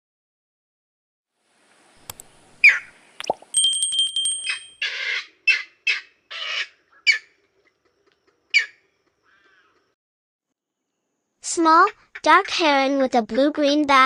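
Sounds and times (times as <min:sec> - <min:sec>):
heron squawking calls: 0:04.8 - 0:07.3.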